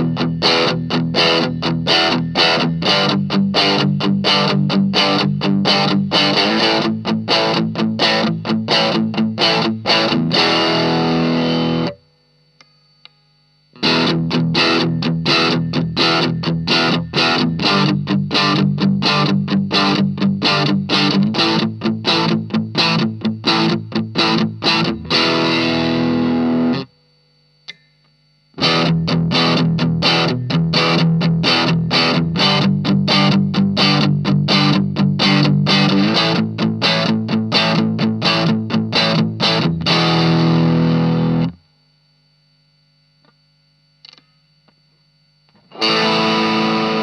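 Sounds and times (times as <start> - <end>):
distorted electric guitar riff: 0.0 - 12.2, 13.7 - 41.9, 45.5 - 47.0
faint amp hum: 0.0 - 47.0.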